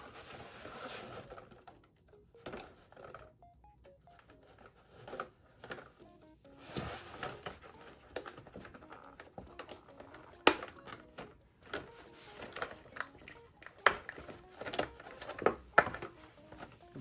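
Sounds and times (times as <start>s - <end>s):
plastic packaging clicks and crackles: 0.0s - 17.0s.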